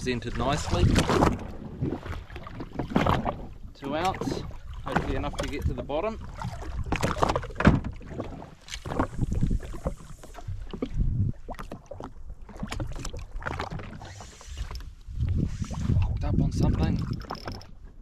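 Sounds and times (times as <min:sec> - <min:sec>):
water lapping against hull: 0:00.0 - 0:18.0
sharp clicks and knocks: 0:16.8 - 0:17.7.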